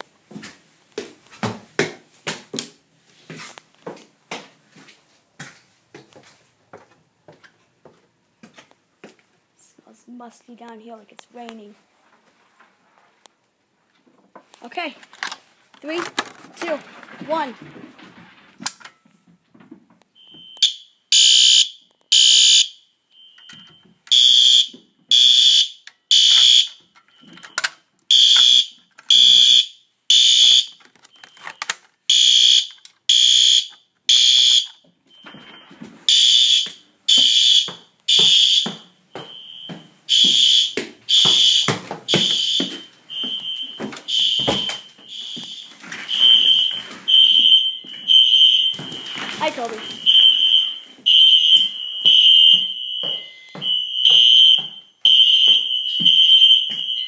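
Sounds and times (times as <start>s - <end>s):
fire alarm horn blasts: 20.2s - 26.8s, 28.1s - 30.7s, 32.1s - 34.8s, 36.1s - 57.0s.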